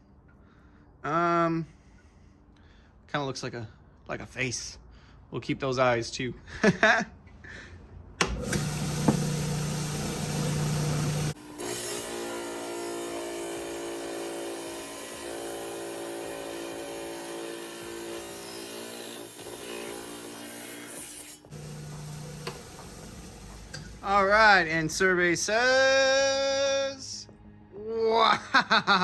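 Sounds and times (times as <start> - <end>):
trim saw cutting stone: 8.2 - 25.1.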